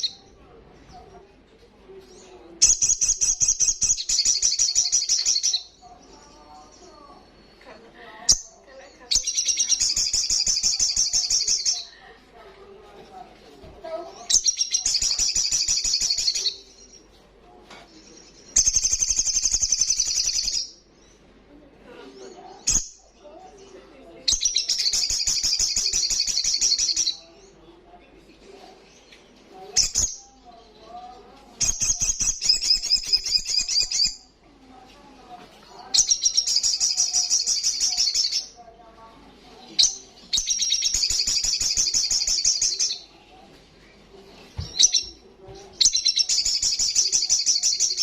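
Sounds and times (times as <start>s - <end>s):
bird singing trilled phrases: 2.1s - 11.9s, 14.1s - 17.0s, 18.1s - 21.2s, 22.6s - 27.6s, 29.8s - 30.8s, 31.6s - 34.3s, 35.6s - 38.6s, 39.7s - 43.1s, 44.6s - 45.2s, 45.8s - 48.0s.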